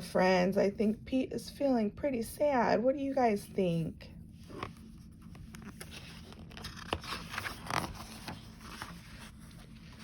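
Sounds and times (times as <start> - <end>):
paper rustling and scraping: 4.4 - 10.0
paper crackles: 5.1 - 10.0.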